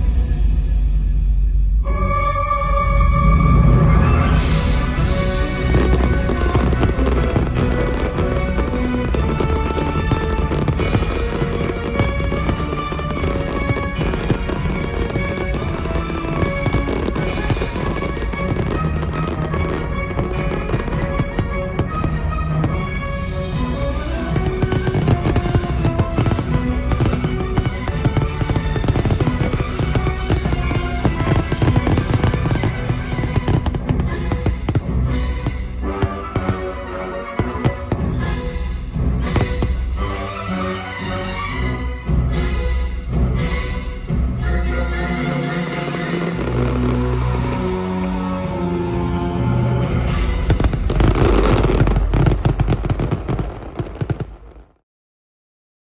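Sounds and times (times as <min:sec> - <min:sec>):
loud orchestral music: 0:00.0 - 0:54.0
fireworks crackling and popping: 0:04.4 - 0:36.8, 0:37.4 - 0:38.6, 0:39.2 - 0:40.4, 0:46.1 - 0:48.4, 0:50.0 - 0:54.8.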